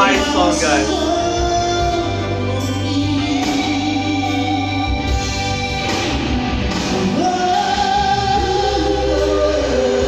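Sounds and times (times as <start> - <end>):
vocal trio singing ballad: 0.0 - 5.2, 7.0 - 10.0
guitar and bass accompaniment: 0.0 - 10.0.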